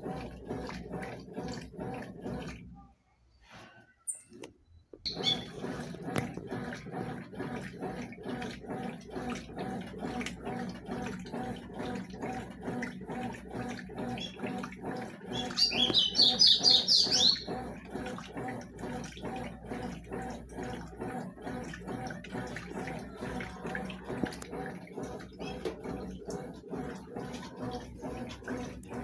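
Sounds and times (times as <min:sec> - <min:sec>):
washing machine sloshing water: 0:00.0 - 0:03.0, 0:05.0 - 0:29.0
bird chirping rapidly: 0:05.1 - 0:05.5, 0:15.3 - 0:17.5.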